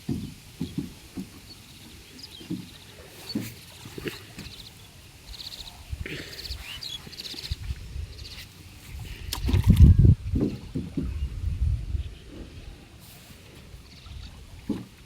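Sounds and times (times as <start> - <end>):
boat knocks and thumps: 0.0 - 6.1, 8.9 - 11.6, 13.4 - 15.0
wind on microphone: 3.2 - 15.0.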